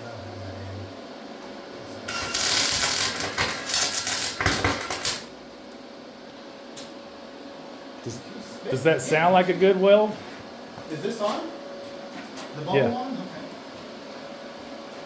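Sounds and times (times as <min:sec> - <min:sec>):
welding arc crackling: 0:02.1 - 0:05.3.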